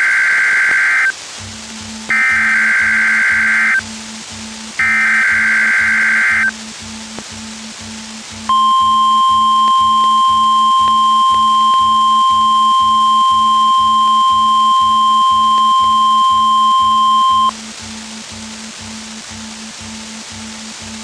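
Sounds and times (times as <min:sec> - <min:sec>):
loud steady alarm tone: 0:00.0 - 0:01.2, 0:02.1 - 0:03.9, 0:04.8 - 0:06.5, 0:08.5 - 0:17.6
low pulsing buzz: 0:00.0 - 0:21.0
radio receiver hiss: 0:00.0 - 0:21.0.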